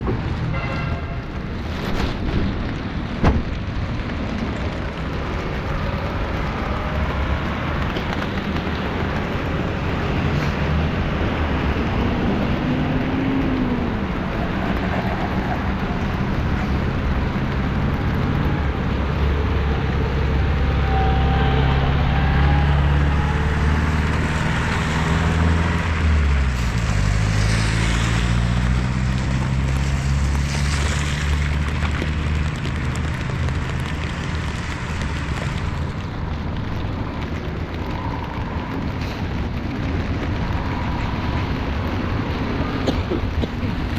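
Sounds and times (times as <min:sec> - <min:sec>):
large vehicle engine hum: 0:00.0 - 0:43.9
rain and tyres hissing: 0:00.0 - 0:43.9.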